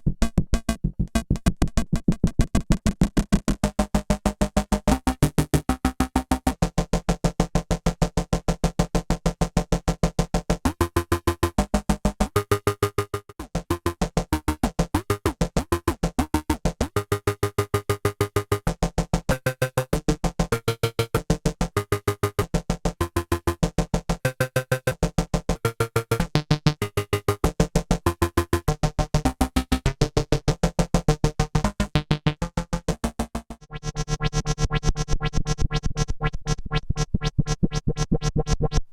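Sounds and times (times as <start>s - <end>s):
synthesizer pulsing note pattern: 33.6s - 38.8s.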